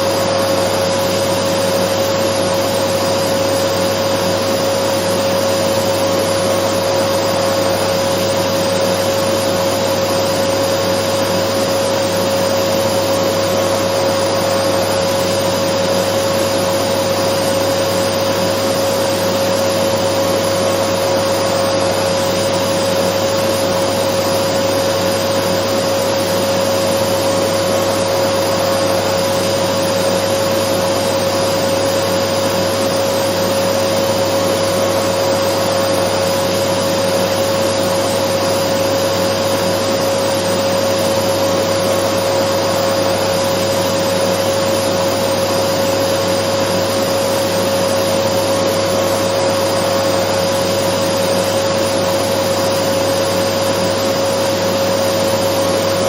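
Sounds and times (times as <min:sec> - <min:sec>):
vacuum cleaner running: 0:00.0 - 0:56.0.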